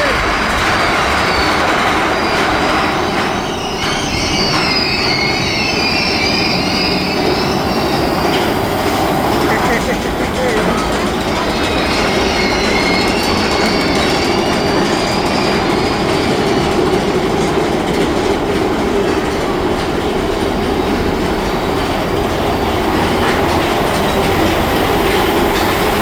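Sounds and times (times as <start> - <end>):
high wheel squeal: 0.0 - 17.4
roller coaster cars rattling: 0.0 - 26.0.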